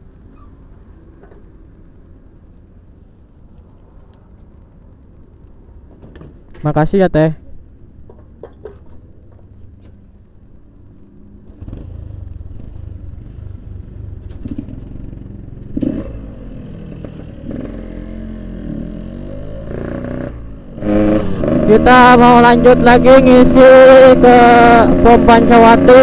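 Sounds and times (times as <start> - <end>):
motorcycle engine revving: 11.3 - 26.0.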